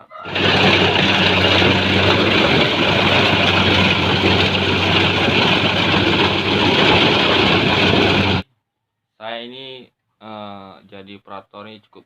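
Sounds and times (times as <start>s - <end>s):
combine harvester engine hum: 0.0s - 8.4s.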